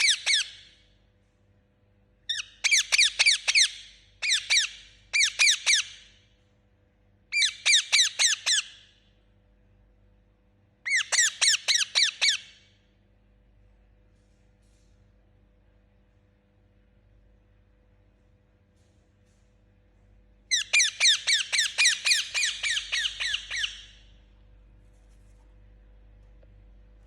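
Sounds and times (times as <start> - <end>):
parakeet chirping: 0.0 - 0.7, 2.3 - 6.1, 7.3 - 8.8, 10.9 - 12.6, 20.5 - 24.1.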